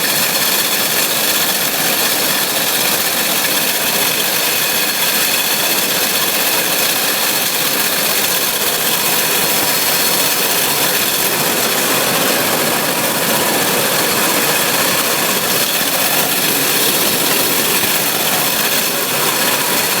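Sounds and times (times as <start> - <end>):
baler and tractor droning: 5.9 - 20.0
faint high whining tones: 6.5 - 20.0.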